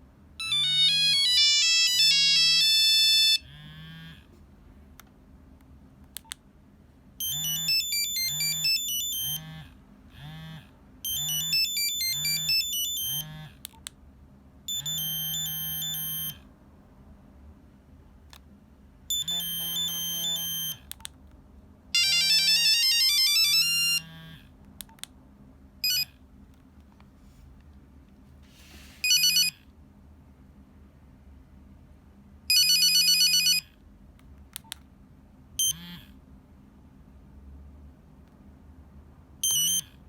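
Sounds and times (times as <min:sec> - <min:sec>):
monophonic phone ringtones: 0:00.4 - 0:03.4, 0:07.2 - 0:09.5, 0:11.1 - 0:13.3, 0:14.7 - 0:16.4, 0:19.1 - 0:20.8, 0:22.0 - 0:24.1, 0:29.0 - 0:29.5, 0:32.5 - 0:33.6, 0:39.4 - 0:39.8.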